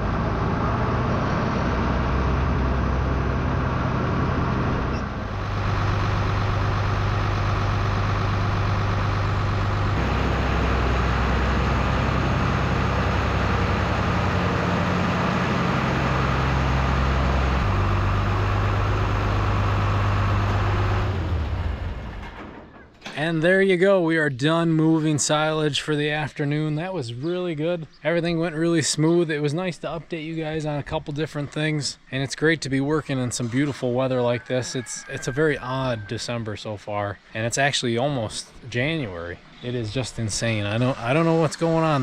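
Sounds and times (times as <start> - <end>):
tractor engine running: 0.0 - 23.4, 39.8 - 42.0.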